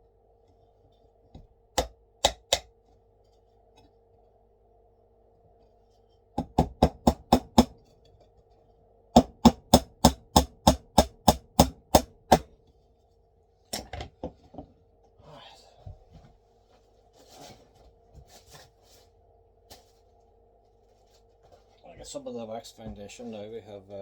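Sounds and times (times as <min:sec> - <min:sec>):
hammer tapping nails into wood: 0:01.8 - 0:02.7, 0:06.4 - 0:07.8, 0:09.2 - 0:12.5.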